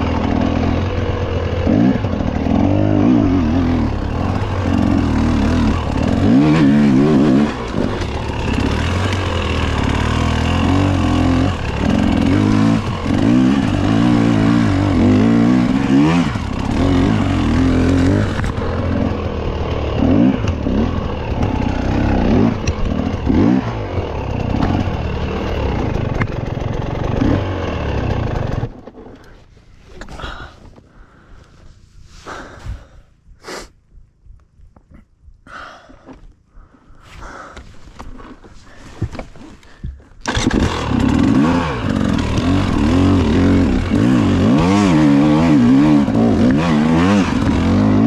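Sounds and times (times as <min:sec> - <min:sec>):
bike rattle: 0:00.0 - 0:31.6, 0:37.0 - 0:48.0
bike tyre noise: 0:29.0 - 0:33.8, 0:34.8 - 0:45.7.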